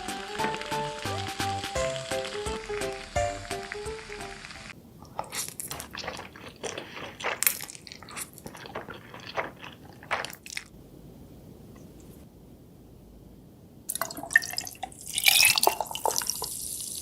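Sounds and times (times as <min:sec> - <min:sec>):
wet crunching of seafood: 0:05.0 - 0:10.8.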